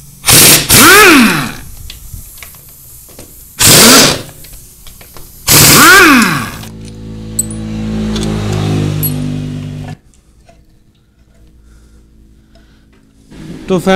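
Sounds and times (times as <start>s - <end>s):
impact driver bursts: 0.2s - 1.6s, 3.6s - 4.4s, 5.5s - 6.7s.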